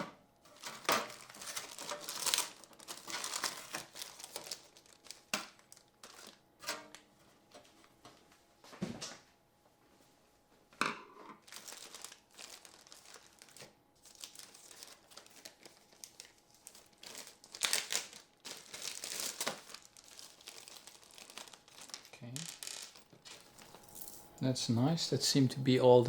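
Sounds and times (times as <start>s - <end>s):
plastic bags crinkling: 0.5s - 7.0s, 11.4s - 24.4s.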